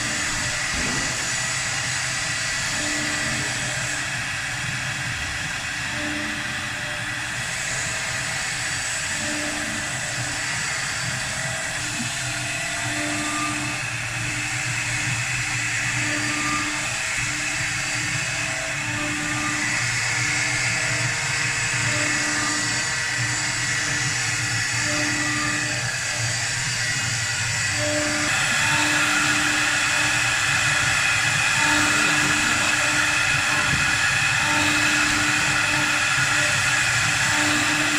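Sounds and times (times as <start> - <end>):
wood lathe whirring: 0.0 - 37.9.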